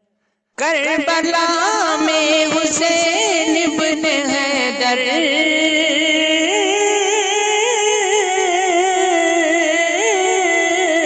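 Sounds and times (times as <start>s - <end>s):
person singing ornamented line: 0.6s - 11.0s.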